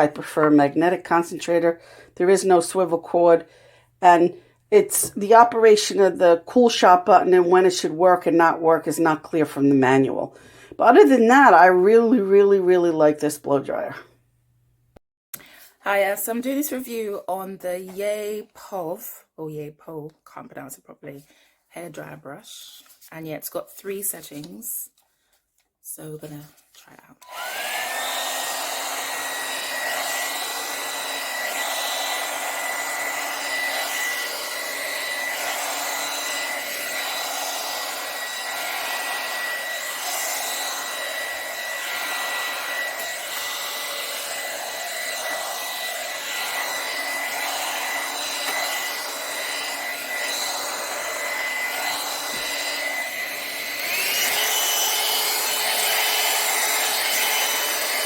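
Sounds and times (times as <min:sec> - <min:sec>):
hair dryer brush motor whine: 0:27.2 - 0:58.0.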